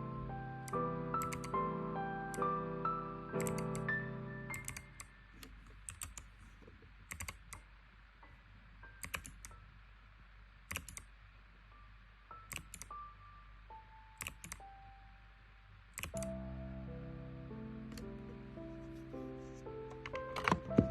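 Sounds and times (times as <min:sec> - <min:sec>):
mechanical keyboard typing: 0:00.6 - 0:01.6, 0:03.4 - 0:03.9, 0:04.5 - 0:06.3, 0:07.1 - 0:07.6, 0:09.0 - 0:09.6, 0:10.7 - 0:11.1, 0:12.5 - 0:13.0, 0:14.2 - 0:14.7, 0:16.0 - 0:16.3, 0:19.9 - 0:20.9.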